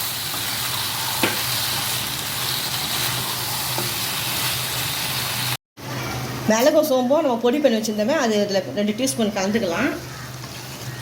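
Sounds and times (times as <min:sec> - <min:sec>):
meat sizzling in oil: 0:00.0 - 0:05.6.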